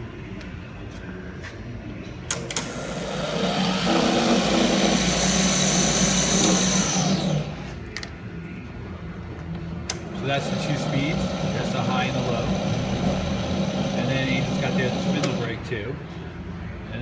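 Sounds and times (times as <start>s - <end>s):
lathe motor whining: 2.5s - 7.8s, 10.0s - 15.7s.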